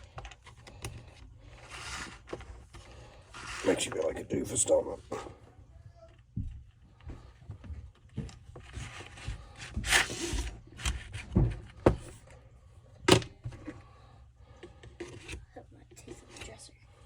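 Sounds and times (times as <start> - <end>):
scraping and rubbing: 1.0 - 4.2, 8.6 - 11.5.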